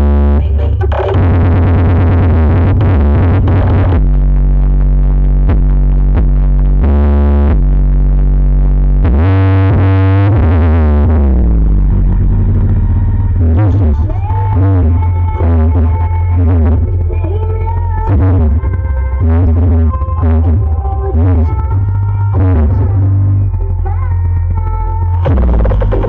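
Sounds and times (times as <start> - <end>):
loud electronic music: 0.0 - 26.0.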